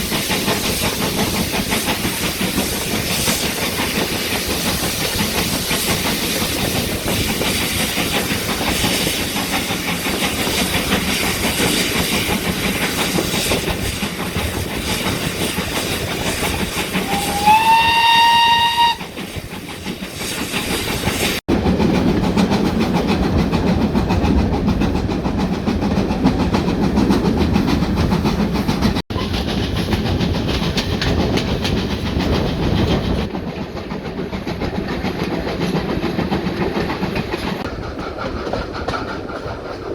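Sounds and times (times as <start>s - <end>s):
steam train rumble and hiss: 0.0s - 39.9s
steam whistle blast: 17.0s - 19.1s.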